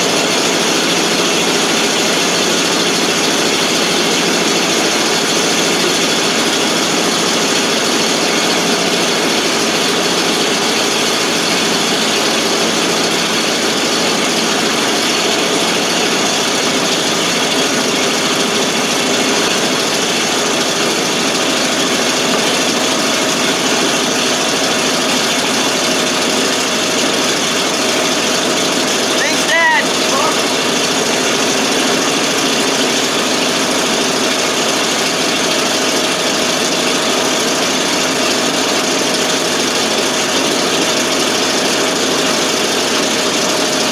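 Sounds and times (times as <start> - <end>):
truck engine idling: 0.0 - 43.9.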